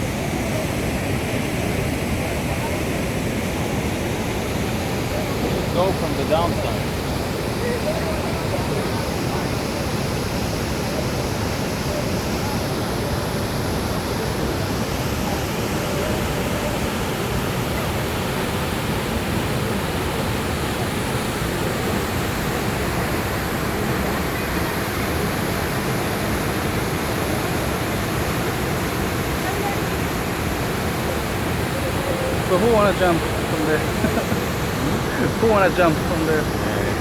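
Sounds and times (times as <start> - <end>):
waterfall rushing: 11.8 - 37.0.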